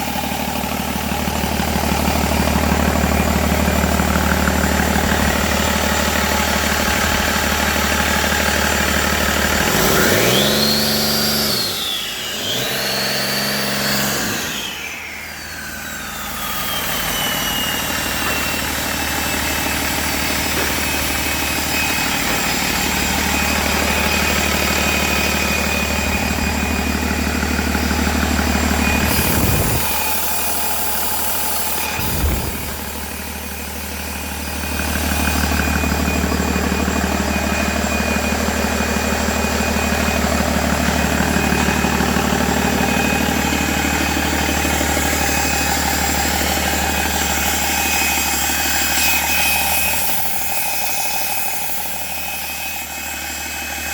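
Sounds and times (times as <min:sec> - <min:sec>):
diesel engine idling and revving: 0:00.0 - 0:53.9
high whine: 0:08.6 - 0:53.9.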